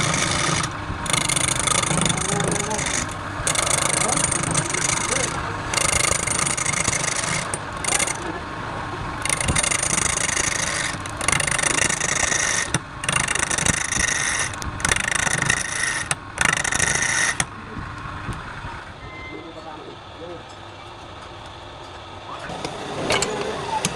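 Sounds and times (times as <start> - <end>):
tool scraping spinning wood: 0.0 - 8.4, 9.2 - 17.6
lathe running: 0.0 - 17.7.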